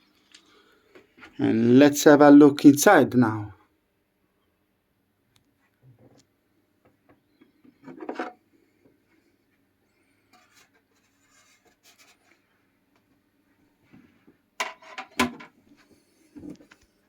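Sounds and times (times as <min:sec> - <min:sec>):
scraping rub: 0:10.3 - 0:12.4.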